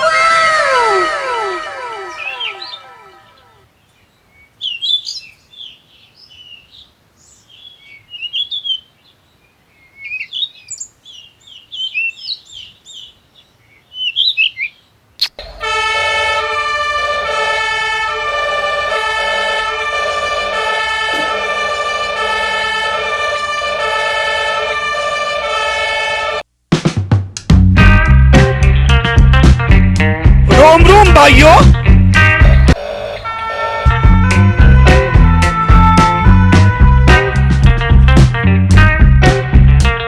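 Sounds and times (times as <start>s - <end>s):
small birds chirping: 0.0s - 15.6s
background music with beat: 26.8s - 32.8s, 33.8s - 40.0s.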